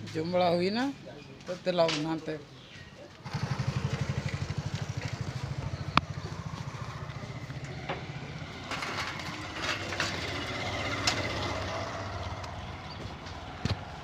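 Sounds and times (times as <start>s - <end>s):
small engine idling: 3.2s - 13.7s.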